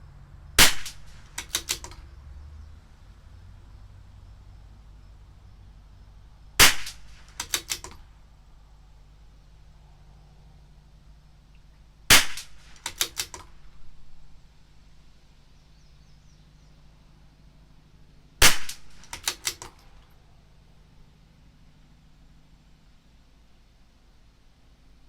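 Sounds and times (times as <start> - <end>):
rifle bolt clicks: 0.6 - 2.0, 6.6 - 8.1, 12.2 - 13.6, 18.4 - 20.1
rifle shots: 0.6 - 2.0, 6.6 - 8.1, 12.1 - 13.8, 18.4 - 20.0.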